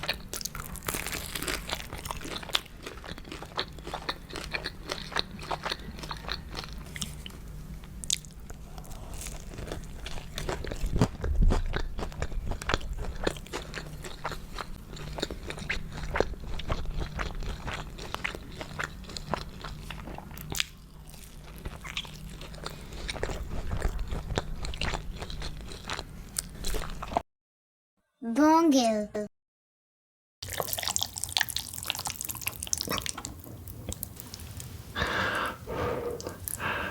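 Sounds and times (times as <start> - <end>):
crunchy food chewing: 0.0 - 27.2.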